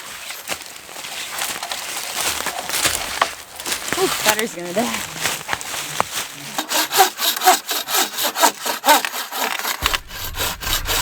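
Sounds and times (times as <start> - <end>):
saw rasping through log: 6.5 - 11.0
low rumble: 9.8 - 11.0.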